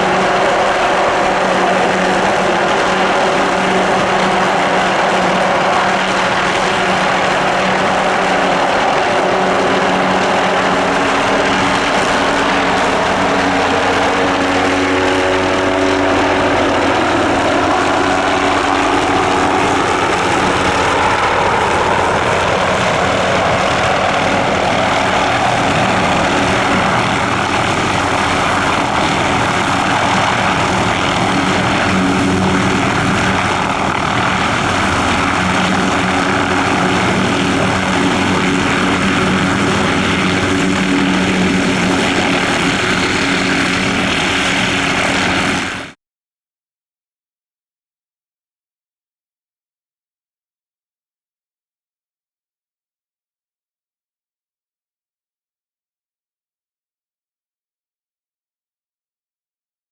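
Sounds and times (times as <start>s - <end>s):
helicopter rotor and turbine: 0.0s - 46.0s.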